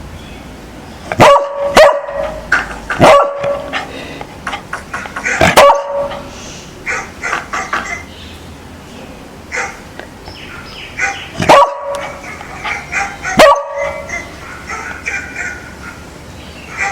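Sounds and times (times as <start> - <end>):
dog barking: 1.1 - 3.9, 4.5 - 8.1, 9.5 - 9.9, 10.5 - 16.9.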